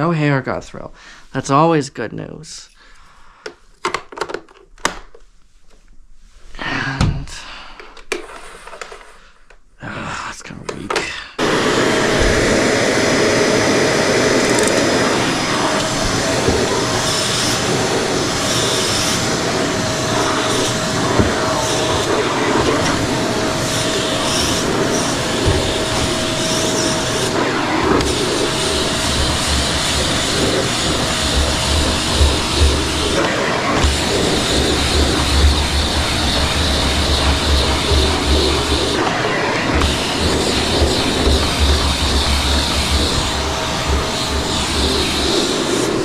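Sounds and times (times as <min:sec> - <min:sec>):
vacuum cleaner running: 0:11.4 - 0:46.0.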